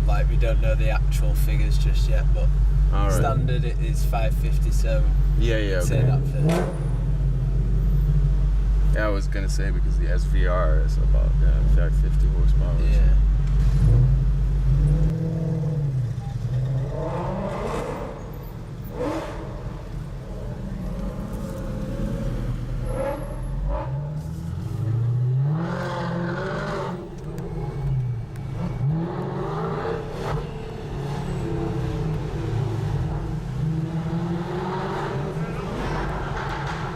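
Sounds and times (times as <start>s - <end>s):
car engine revving: 0.0s - 36.9s.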